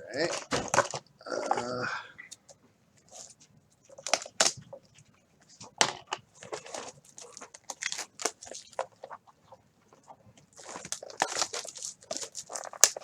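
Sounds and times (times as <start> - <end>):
plastic wrapping tearing and crinkling: 3.1 - 4.7, 6.1 - 9.2, 10.5 - 13.0.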